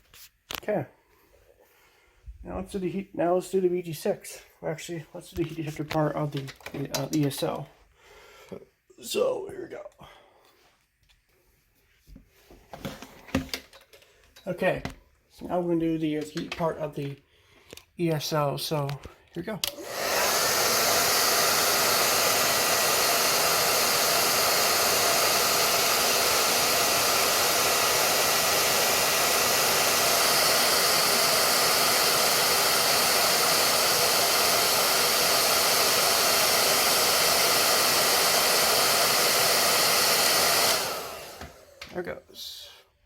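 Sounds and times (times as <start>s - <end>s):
hot-air blower rushing air: 19.7s - 42.2s.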